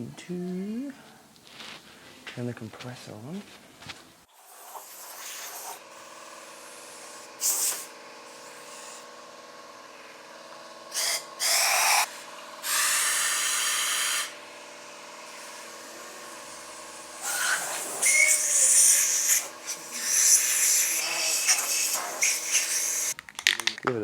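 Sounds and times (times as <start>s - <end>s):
air compressor running: 4.3s - 23.2s
blow gun hissing blasts: 4.4s - 9.0s, 10.9s - 14.4s, 15.3s - 23.2s.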